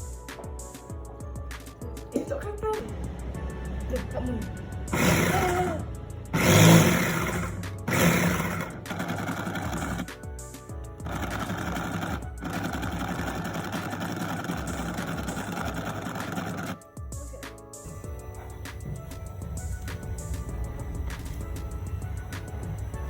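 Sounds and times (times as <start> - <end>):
background music: 0.0 - 23.0
small electric motor running: 4.9 - 10.1, 11.0 - 16.8.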